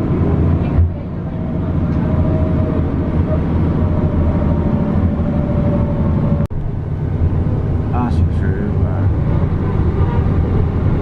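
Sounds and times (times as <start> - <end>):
bus engine and road rumble: 0.0 - 11.0.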